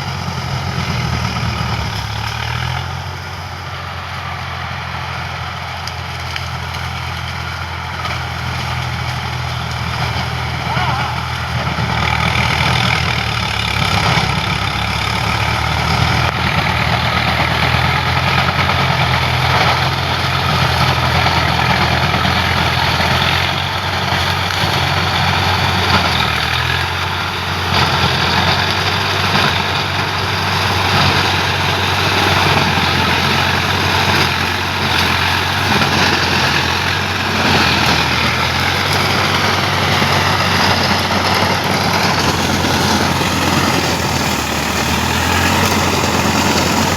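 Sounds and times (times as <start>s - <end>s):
tractor diesel engine running: 0.0s - 46.9s.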